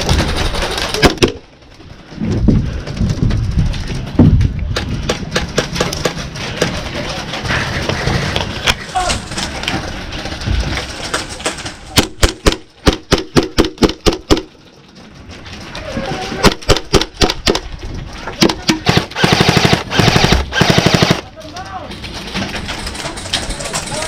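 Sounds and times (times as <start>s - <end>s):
airsoft guns firing: 11.5s - 14.6s, 16.4s - 17.7s, 18.4s - 21.3s.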